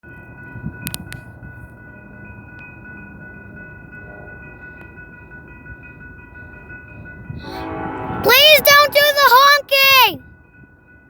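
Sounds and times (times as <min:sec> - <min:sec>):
train rumble: 0:00.1 - 0:11.0
faint steady high tones: 0:07.4 - 0:10.2
locomotive horn: 0:07.4 - 0:10.2.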